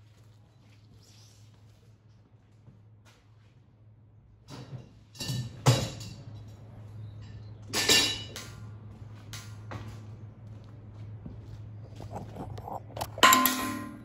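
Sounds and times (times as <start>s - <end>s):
steady low hum: 0.0s - 14.0s
metallic clanks: 13.0s - 14.0s.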